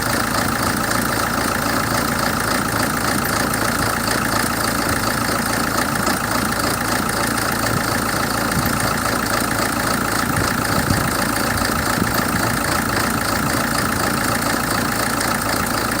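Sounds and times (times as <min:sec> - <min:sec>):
diesel engine idling roughly: 0:00.0 - 0:16.0.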